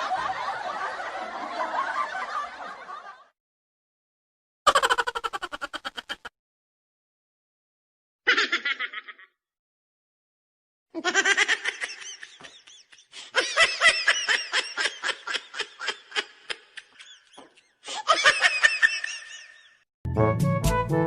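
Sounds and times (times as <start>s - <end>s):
high-pitched laughter: 4.7s - 6.3s, 8.3s - 9.4s, 11.0s - 19.8s.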